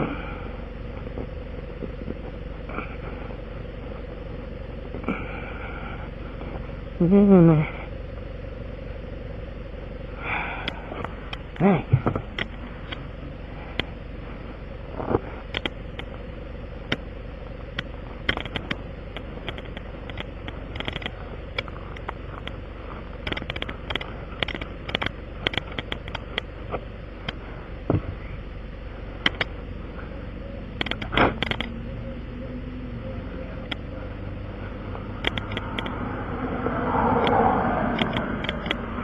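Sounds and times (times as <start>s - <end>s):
engine idle hum: 0.0s - 39.0s
hand tools clicking on tire: 17.8s - 22.6s, 23.2s - 26.5s, 35.2s - 36.0s.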